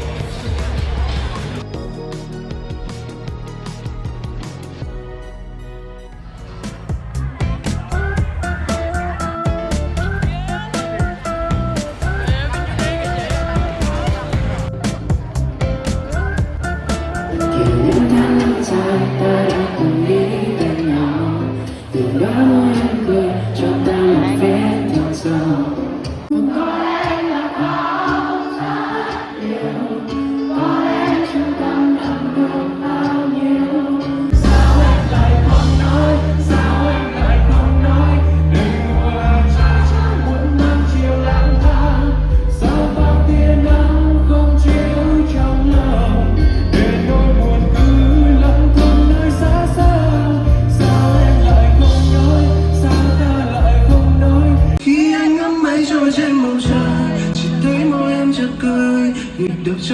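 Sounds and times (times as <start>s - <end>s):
song with sung vocals: 0.0s - 59.9s
heavy bass line: 6.2s - 19.4s, 34.3s - 54.8s.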